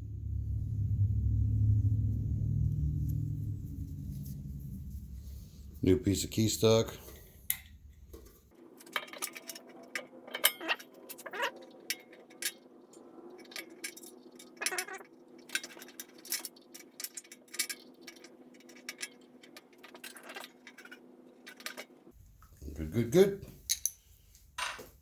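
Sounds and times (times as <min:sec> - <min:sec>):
faint steady hum: 0:00.0 - 0:25.0
small metal clinks and taps: 0:07.5 - 0:21.9, 0:23.7 - 0:25.0.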